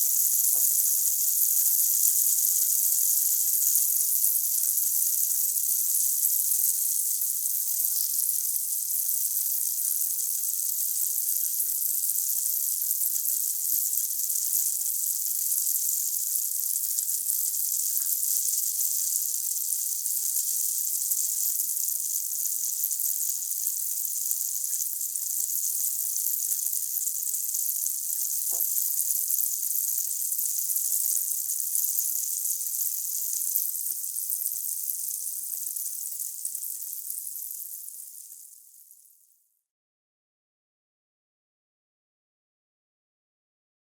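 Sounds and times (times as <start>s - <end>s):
tablet fizzing in water: 0.0s - 6.3s.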